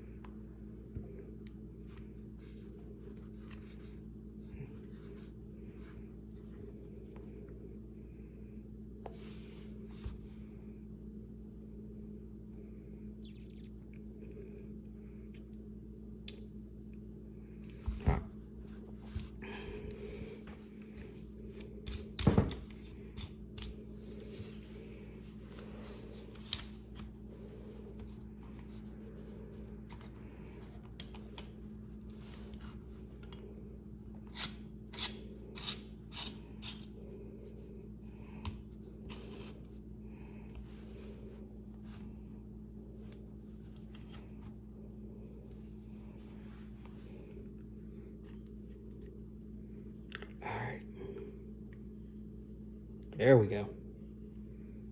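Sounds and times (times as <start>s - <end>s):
low electrical hum: 0.0s - 54.9s
metal tools clicking and scraping: 34.2s - 36.9s.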